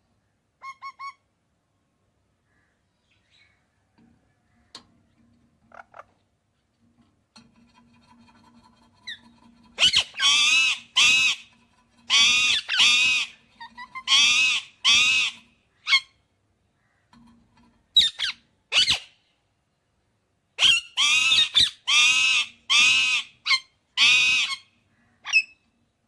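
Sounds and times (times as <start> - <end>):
parrot calling loudly: 0.6 - 1.2, 12.1 - 16.1, 20.6 - 25.4.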